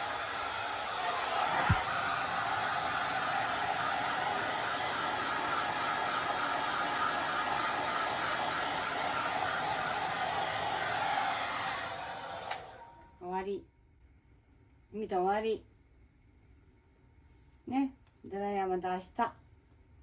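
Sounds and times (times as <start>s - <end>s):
hair dryer blowing: 0.0s - 13.0s
brief low thump: 1.5s - 1.9s.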